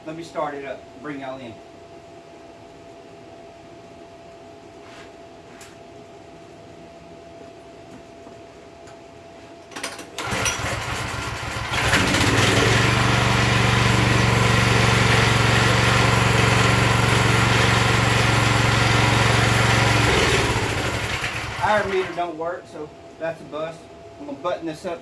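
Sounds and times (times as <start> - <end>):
pressure washer engine running: 10.2 - 22.2.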